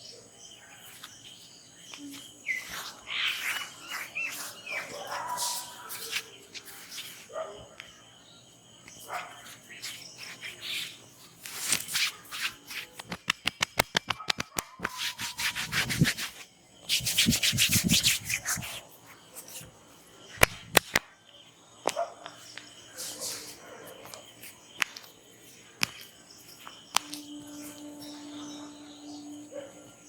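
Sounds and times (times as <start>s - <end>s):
hands rubbing hair and skin: 2.0s - 7.3s, 8.9s - 19.7s, 20.4s - 21.0s.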